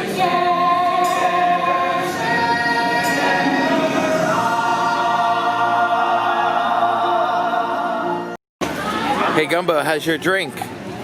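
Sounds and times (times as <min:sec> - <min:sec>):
backing music: 0:00.0 - 0:08.4
chorus singing held notes: 0:00.0 - 0:08.4.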